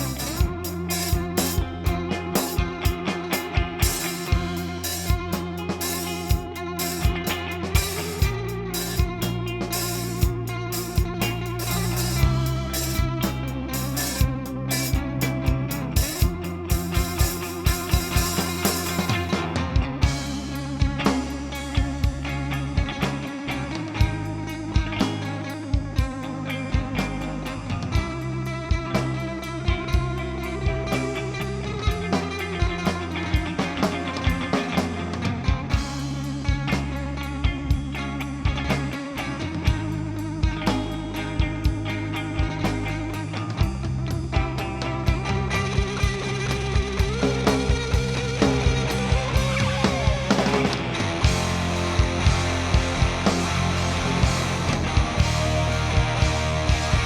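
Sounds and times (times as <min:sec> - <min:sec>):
drum kit steady beat: 0:00.0 - 0:22.4, 0:46.0 - 0:57.0
bass guitar: 0:00.0 - 0:57.0
electric guitar playing: 0:00.0 - 0:57.0
instrumental rock music: 0:00.0 - 0:57.0.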